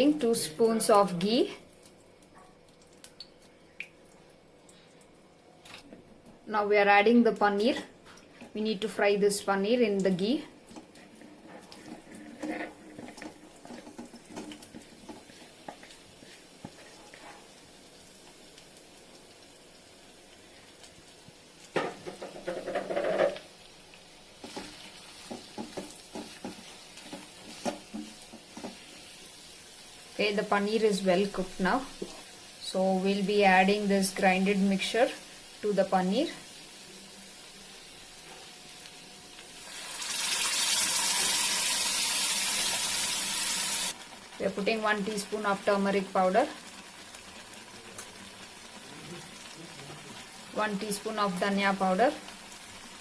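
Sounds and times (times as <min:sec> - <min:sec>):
cheese frying with faint sizzle: 0:00.0 - 0:53.0
stirring and scraping against pan: 0:10.6 - 0:17.7, 0:24.4 - 0:29.3.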